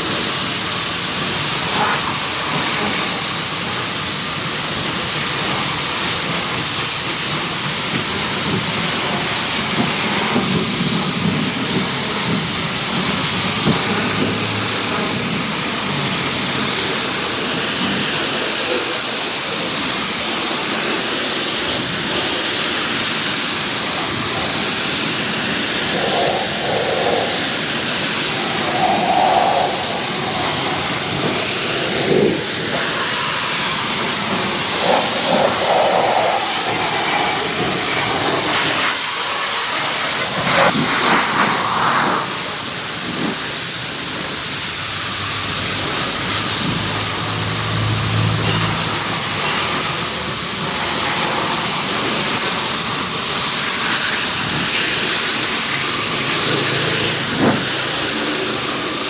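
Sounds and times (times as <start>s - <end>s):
pressure washer spraying water: 0.0s - 59.0s
high whine: 23.7s - 34.6s.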